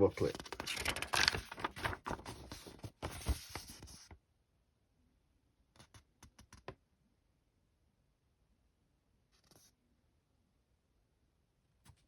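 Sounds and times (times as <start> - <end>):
paper rustling pages turned: 0.0 - 4.2.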